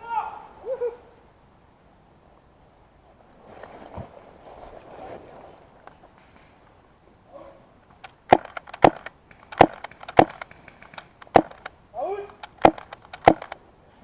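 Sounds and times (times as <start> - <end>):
light clicks: 7.9 - 13.6
sharp woody cracks and knocks: 7.9 - 13.6.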